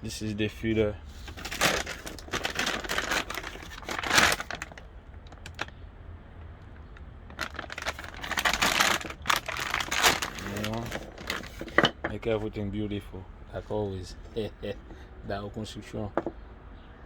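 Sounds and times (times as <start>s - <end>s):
rustling and crackling: 0.7s - 5.8s, 6.4s - 12.6s.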